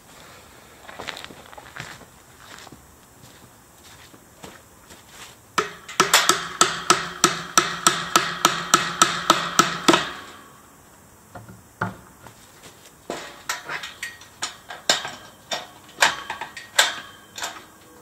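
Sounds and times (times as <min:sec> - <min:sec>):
hammer blows ringing: 0:05.6 - 0:10.5.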